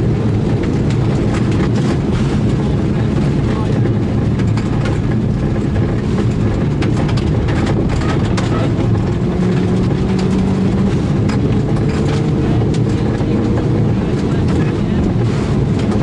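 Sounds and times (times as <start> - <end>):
rally car engine running hard: 0.0 - 16.0.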